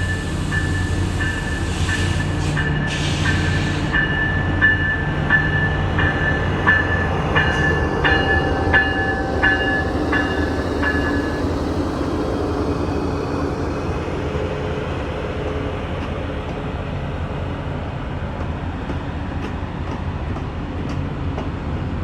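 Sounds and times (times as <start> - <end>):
train bell ringing: 0.0 - 16.0
low train rumble: 0.0 - 22.0.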